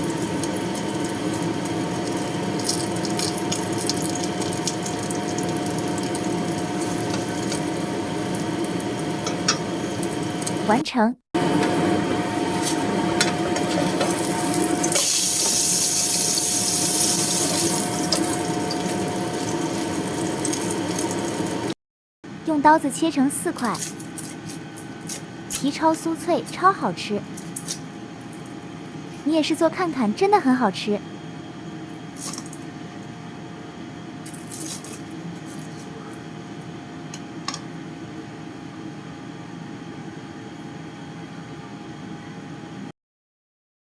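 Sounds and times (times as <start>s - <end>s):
oil sizzling in a frying pan: 0.0s - 10.7s, 11.4s - 21.8s
fan humming: 0.0s - 41.3s.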